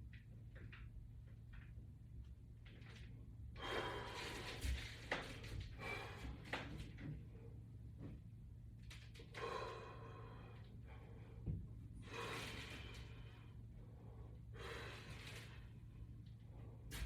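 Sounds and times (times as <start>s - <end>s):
person breathing hard: 3.6s - 4.6s, 9.4s - 15.8s.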